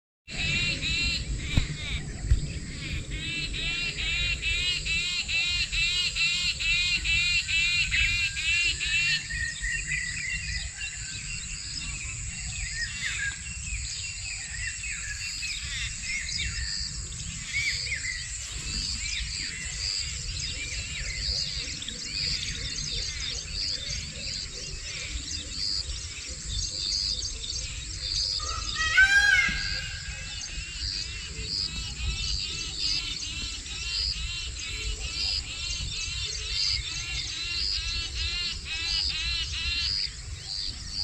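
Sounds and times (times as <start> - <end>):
low rumble: 0.3 - 5.4
birds chirping chorus: 0.3 - 41.0.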